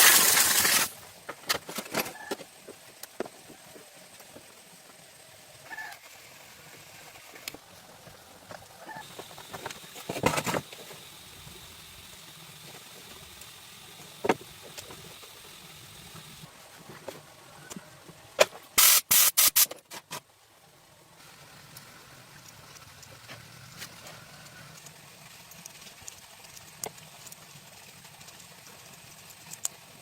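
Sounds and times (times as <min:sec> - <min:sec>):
short hissing sprays: 0:00.0 - 0:01.0, 0:18.8 - 0:19.7.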